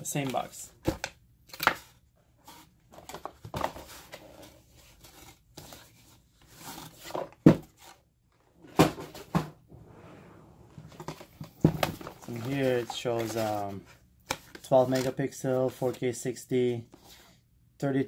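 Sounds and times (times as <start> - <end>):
cardboard boxes knocking and rustling: 6.8 - 8.0, 8.7 - 9.6, 10.9 - 12.6.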